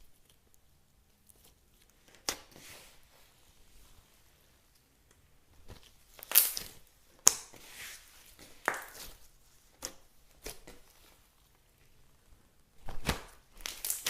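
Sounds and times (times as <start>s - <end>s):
slime popping and crackling: 6.0s - 7.6s, 8.4s - 9.2s, 13.0s - 14.0s.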